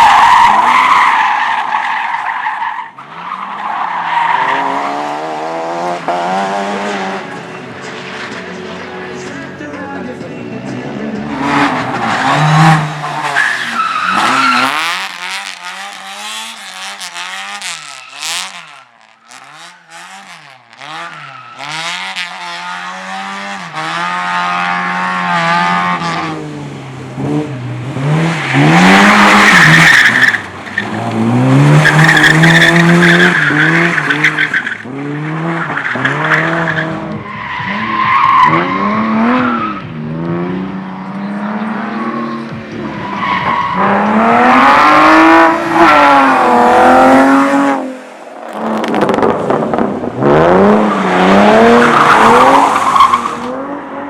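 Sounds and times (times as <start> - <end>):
car engine revving: 0.0 - 54.0
tyres squealing: 11.3 - 16.1.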